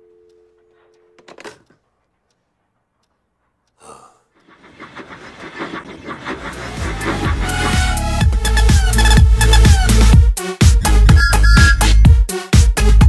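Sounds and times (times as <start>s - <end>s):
receiver clatter: 1.2s - 1.9s
person sighing: 3.8s - 4.3s
electronic music: 5.0s - 13.0s.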